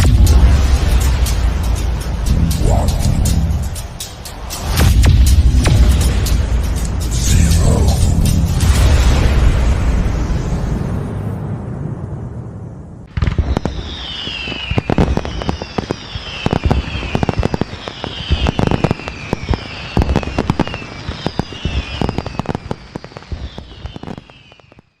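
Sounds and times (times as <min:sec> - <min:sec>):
fireworks bangs and crackles: 0:00.0 - 0:25.0
fireworks falling whistles: 0:13.1 - 0:25.0.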